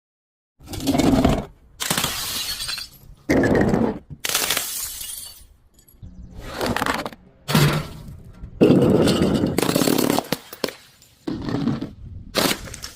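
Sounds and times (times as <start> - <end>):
glass bottles breaking: 2.0 - 3.1, 4.3 - 6.0.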